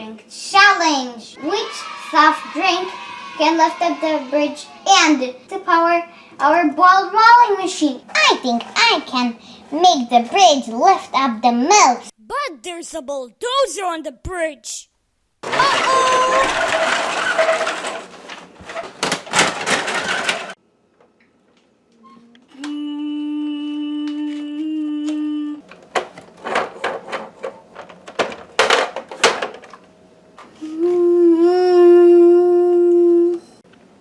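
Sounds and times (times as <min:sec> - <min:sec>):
plastic parts clattering: 0:15.4 - 0:20.6, 0:25.7 - 0:29.9.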